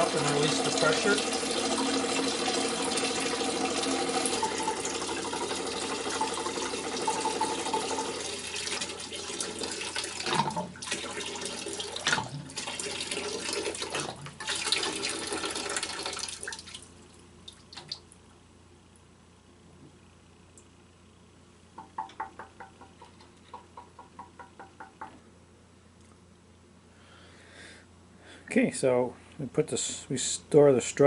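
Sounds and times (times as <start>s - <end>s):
water pouring into a bucket: 0.0s - 16.9s.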